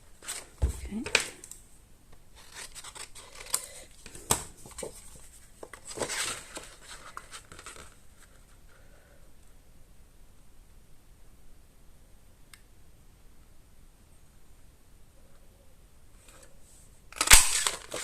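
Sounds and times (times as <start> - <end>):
card stock rustling: 2.4 - 8.5, 17.2 - 18.0.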